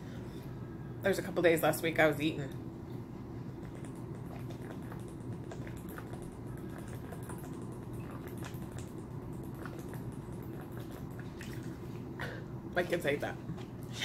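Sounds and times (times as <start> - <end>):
low room hum: 0.0 - 14.0
wet mouth clicks: 3.6 - 11.6.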